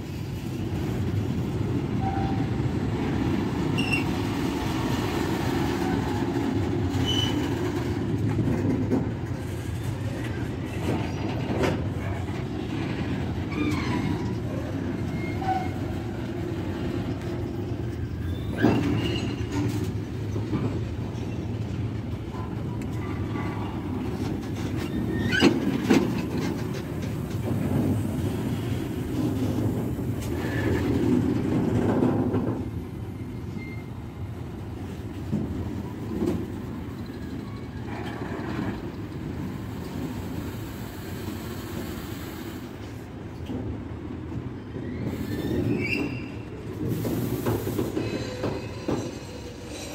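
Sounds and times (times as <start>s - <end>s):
train wheels rumbling: 0.0s - 49.9s
faint wheel squeals: 3.8s - 4.2s, 18.1s - 19.8s, 44.6s - 46.5s.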